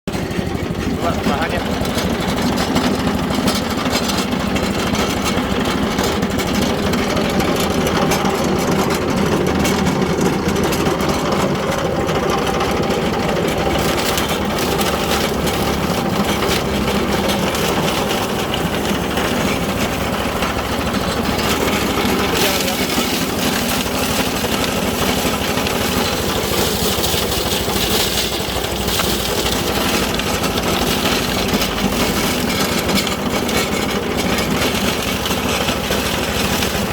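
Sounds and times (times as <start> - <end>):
leaf chopper machine drone: 0.1 - 36.9.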